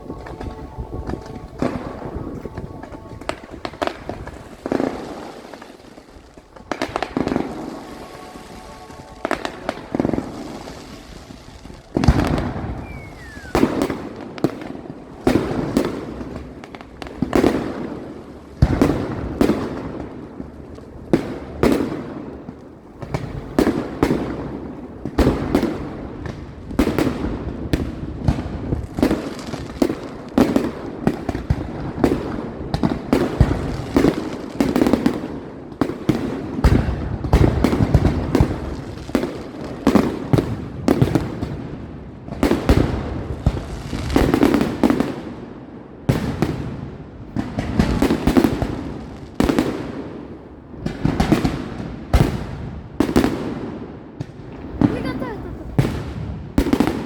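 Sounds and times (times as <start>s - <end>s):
fireworks crackling: 0.0s - 14.6s, 54.4s - 57.0s.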